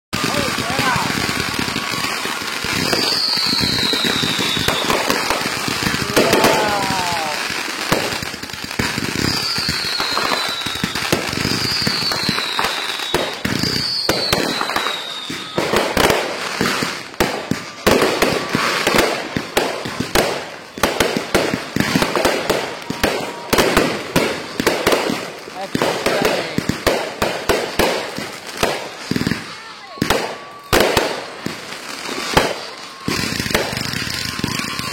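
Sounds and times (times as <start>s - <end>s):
firework bangs: 0.1s - 34.9s
fireworks crackling: 0.1s - 34.9s
falling firework whistles: 0.2s - 34.9s.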